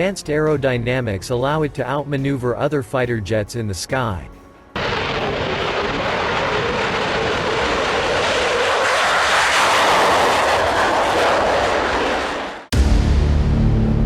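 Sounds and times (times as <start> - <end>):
fighter jet engine rushing: 4.8 - 12.9.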